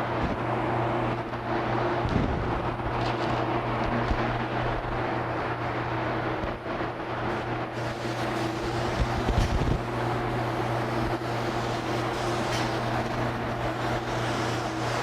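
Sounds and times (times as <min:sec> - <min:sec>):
fans humming: 0:00.0 - 0:15.0
spray gun hissing: 0:07.7 - 0:15.0.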